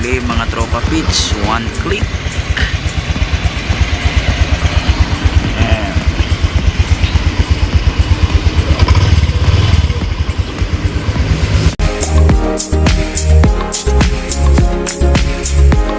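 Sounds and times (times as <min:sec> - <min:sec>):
scooter engine idling: 0:00.0 - 0:12.2.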